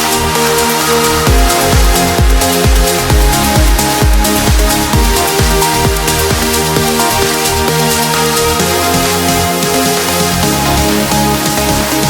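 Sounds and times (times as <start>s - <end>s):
electronic dance music: 0.0s - 12.0s
kick drum beat: 1.2s - 7.8s.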